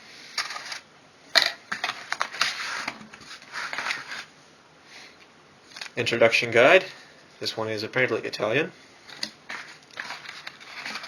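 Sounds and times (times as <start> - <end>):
packaging crinkling and rustling: 5.7 - 6.0, 9.1 - 11.0.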